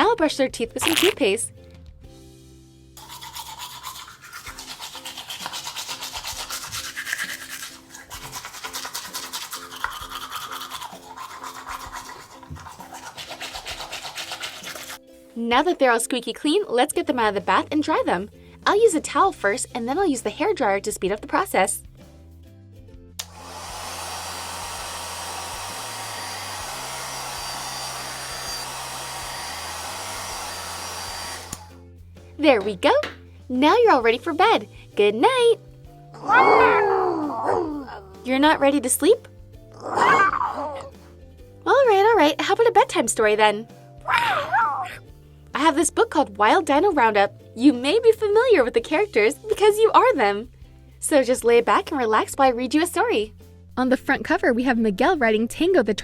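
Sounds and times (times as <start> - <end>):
toothbrush scrubbing: 3.0 - 15.1
hair dryer switch click: 23.2 - 23.7, 31.4 - 31.7
hair dryer blowing: 23.2 - 31.8.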